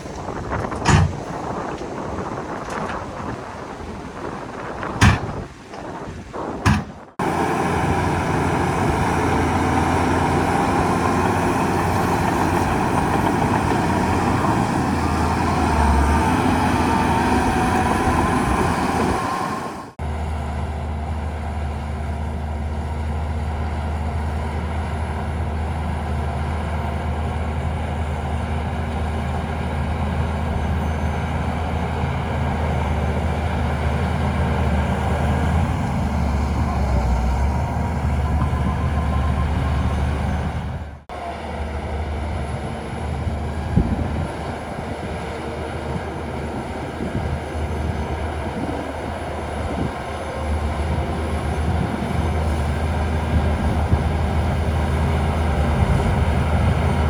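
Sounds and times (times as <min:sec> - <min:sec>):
heavy diesel engine running: 0:00.0 - 0:57.0.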